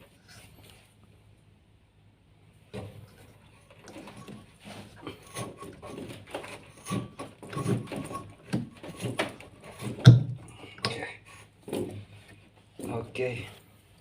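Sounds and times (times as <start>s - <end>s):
machine parts knocking and scraping: 3.6s - 10.5s.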